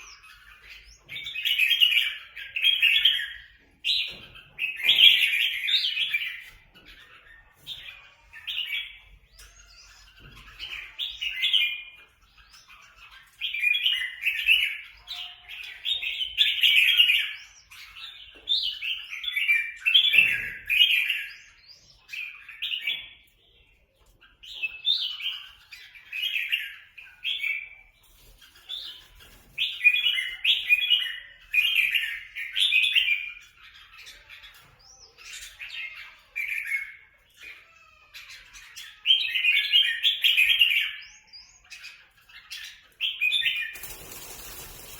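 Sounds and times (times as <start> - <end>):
bulbuls chirping: 0.0 - 36.4.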